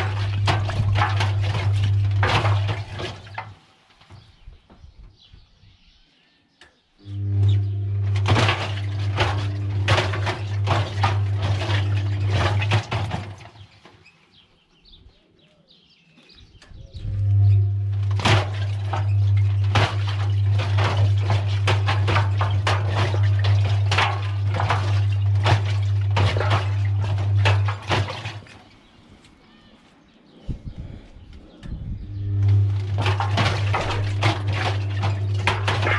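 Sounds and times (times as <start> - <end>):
washing machine motor hum: 0.0 - 3.8, 7.0 - 13.8, 16.7 - 29.3, 30.5 - 35.9
objects clattering in drum: 0.0 - 4.2, 8.0 - 14.0, 17.9 - 28.7, 32.4 - 35.9.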